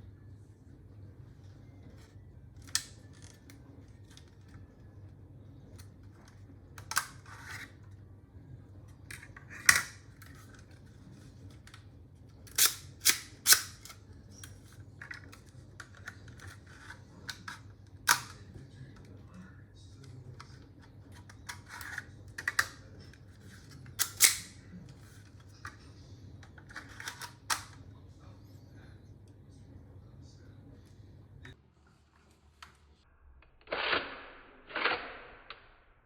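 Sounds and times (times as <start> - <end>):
plastic pistol parts clicking: 2.6 - 4.5, 5.8 - 7.7, 9.1 - 10.7, 12.4 - 18.4, 21.2 - 24.6, 26.5 - 27.8.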